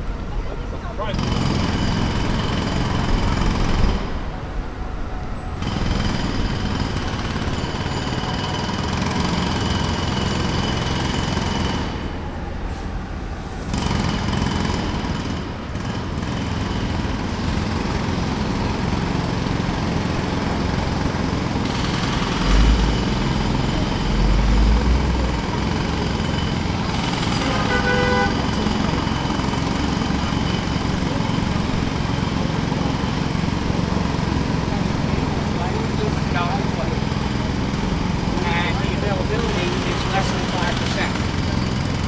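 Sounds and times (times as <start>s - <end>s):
jackhammer hammering: 1.1s - 4.3s, 5.6s - 12.2s, 13.7s - 42.0s.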